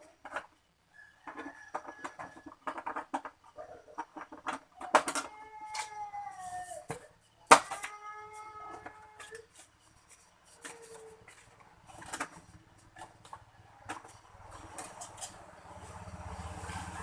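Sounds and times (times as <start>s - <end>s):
scattered clicks and knocks: 1.2s - 6.0s.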